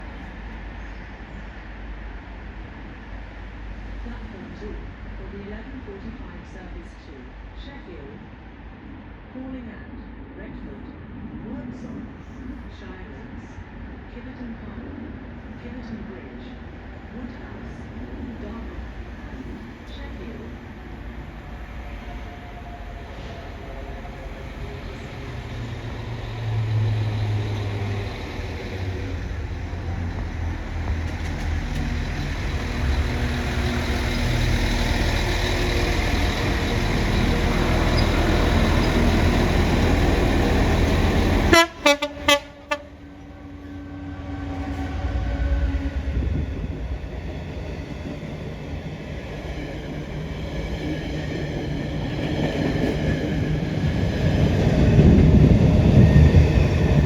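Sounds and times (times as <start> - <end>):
diesel train engine rumble: 0.0 - 57.0
train wheel noise: 17.1 - 57.0
train horn blasts: 41.1 - 45.3.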